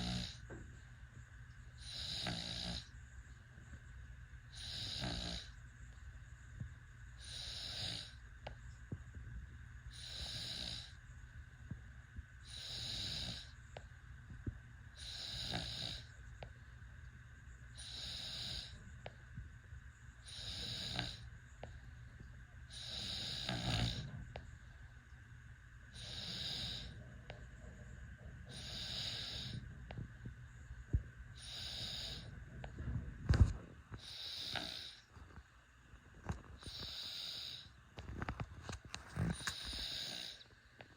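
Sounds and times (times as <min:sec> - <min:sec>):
baby snoring: 0:00.0 - 0:00.4, 0:01.8 - 0:02.9, 0:04.5 - 0:05.6, 0:07.2 - 0:08.2, 0:09.9 - 0:11.0, 0:12.5 - 0:13.6, 0:15.0 - 0:16.1, 0:17.8 - 0:18.8, 0:20.3 - 0:21.3, 0:22.7 - 0:24.2, 0:25.9 - 0:27.0, 0:28.5 - 0:29.6, 0:31.4 - 0:32.3, 0:33.3 - 0:35.0, 0:36.6 - 0:37.7, 0:39.2 - 0:40.4.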